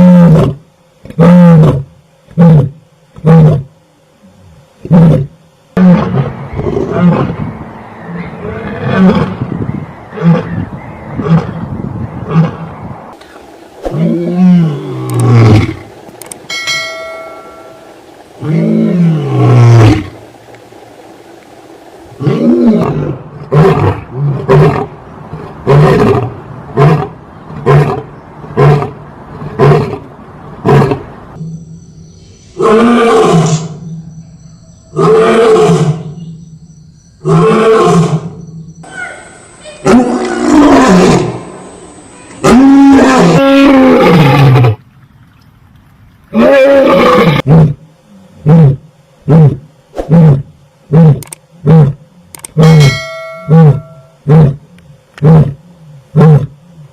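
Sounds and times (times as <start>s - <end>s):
lion roaring: 4.3s - 7.5s, 8.1s - 9.5s, 13.8s - 16.0s, 18.4s - 20.5s, 22.1s - 31.0s, 32.6s - 34.1s, 34.9s - 36.3s, 39.8s - 41.5s, 42.4s - 44.8s, 46.3s - 56.9s.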